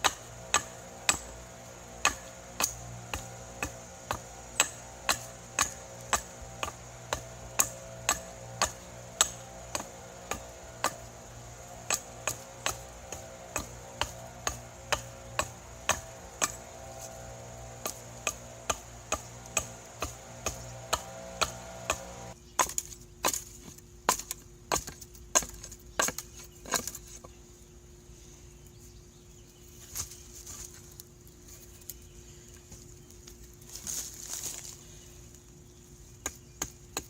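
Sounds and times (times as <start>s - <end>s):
hand tool chopping wood: 0.0s - 27.2s.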